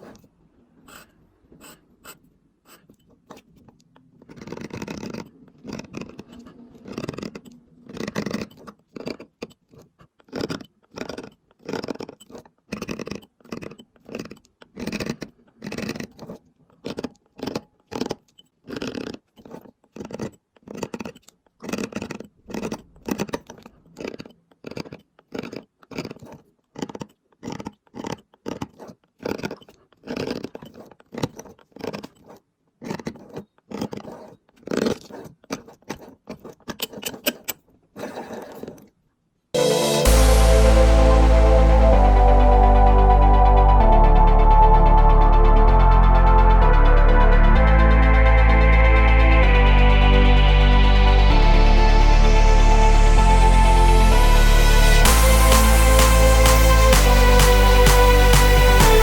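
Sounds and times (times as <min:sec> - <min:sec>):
hand tool scraping stone: 0:00.0 - 0:39.0.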